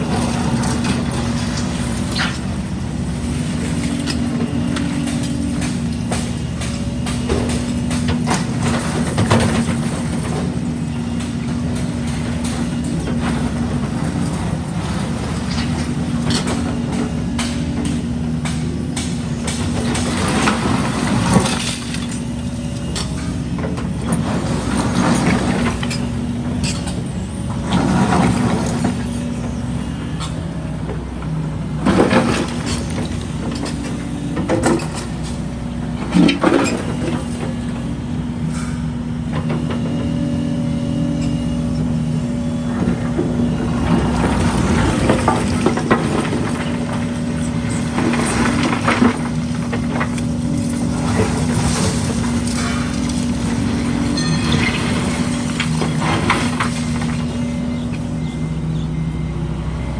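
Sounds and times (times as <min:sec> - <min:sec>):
diesel machinery running: 0:00.0 - 0:59.9.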